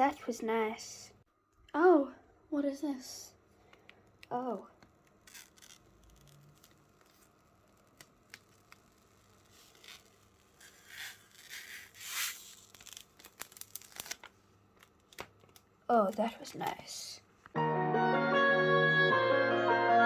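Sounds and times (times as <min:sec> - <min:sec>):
plastic film peeling and crinkling: 0:04.0 - 0:16.8.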